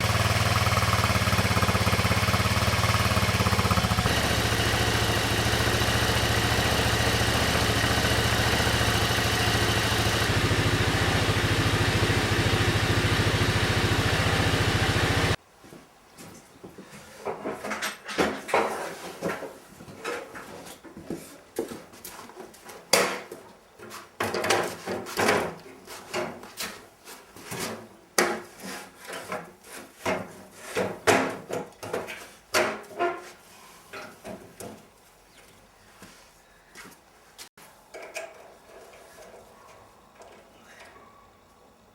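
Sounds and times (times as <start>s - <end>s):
engine running steadily: 0.0s - 15.4s.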